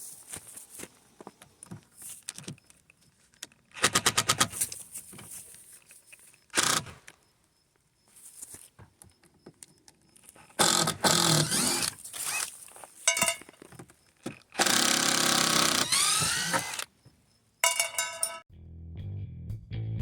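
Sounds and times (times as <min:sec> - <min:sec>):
small knocks and clicks: 0:08.7 - 0:10.6
drill motor spinning: 0:10.6 - 0:12.5, 0:14.6 - 0:16.9.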